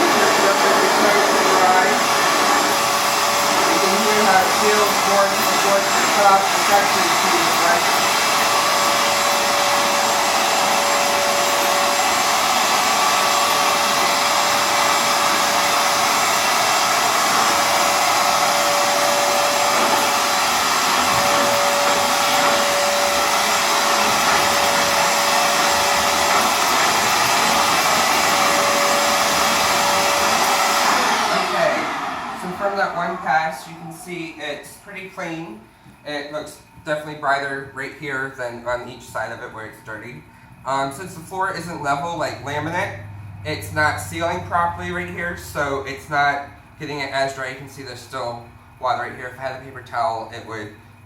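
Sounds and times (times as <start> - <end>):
floor cleaner motor whooshing hiss: 0.0 - 35.2.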